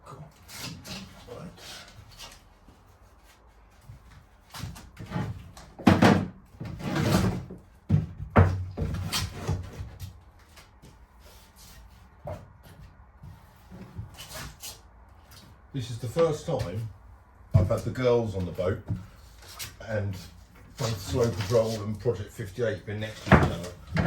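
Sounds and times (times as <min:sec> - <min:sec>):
wooden knocks and thumps: 0:04.7 - 0:10.2, 0:23.2 - 0:24.0.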